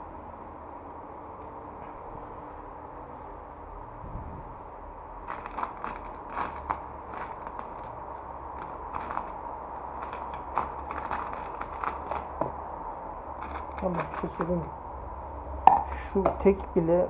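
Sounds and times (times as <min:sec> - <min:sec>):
steady low hum: 0:00.0 - 0:17.0
small parts and screws handled: 0:05.3 - 0:12.4.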